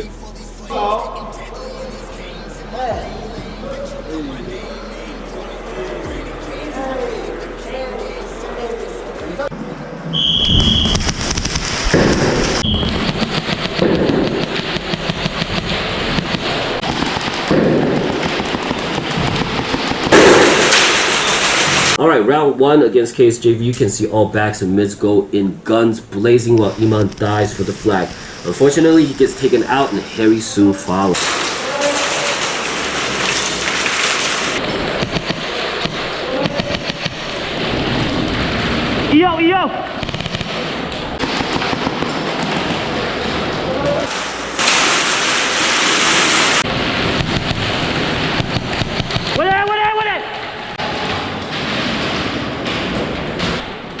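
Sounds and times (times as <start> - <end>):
noisy field ambience: 0.0 - 54.0
airsoft guns firing in bursts: 12.9 - 22.0, 40.0 - 43.1.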